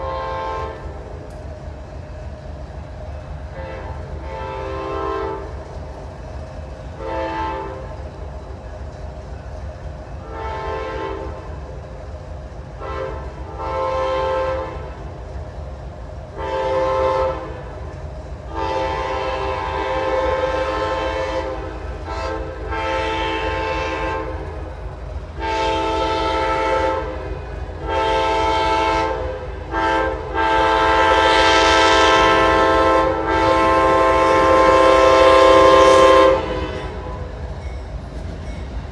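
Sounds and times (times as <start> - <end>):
train air horn blasts: 0.0 - 1.1, 3.5 - 5.6, 7.0 - 8.0, 10.2 - 11.6, 12.8 - 15.0, 16.4 - 17.9, 18.5 - 24.7, 25.4 - 37.5
low rumble of locomotive and rails: 0.0 - 38.9.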